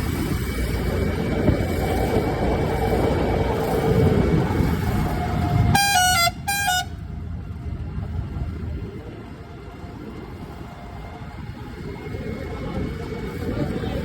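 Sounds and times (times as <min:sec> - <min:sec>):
vehicle rumbling: 0:00.0 - 0:14.0
vehicle horn honks: 0:05.7 - 0:07.0.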